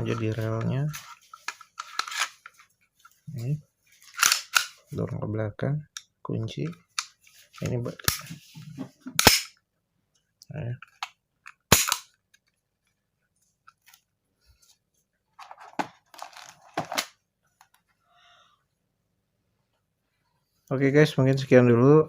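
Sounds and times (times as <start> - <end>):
airgun pistol metal clacks: 4.2 - 4.8.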